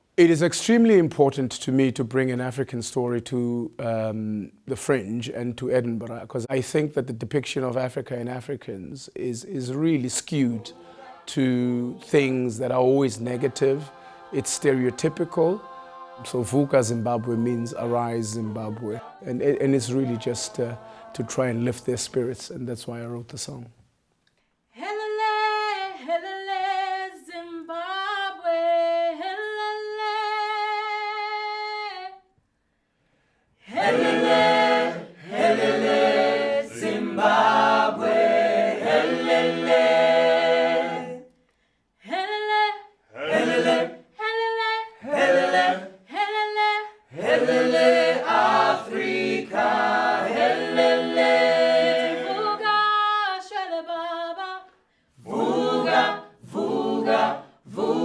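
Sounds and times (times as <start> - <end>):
choir singing in harmony: 9.9 - 22.4, 33.7 - 41.3, 43.1 - 44.2, 45.0 - 46.3, 47.1 - 53.3, 55.2 - 58.0
single voice singing: 10.3 - 22.4.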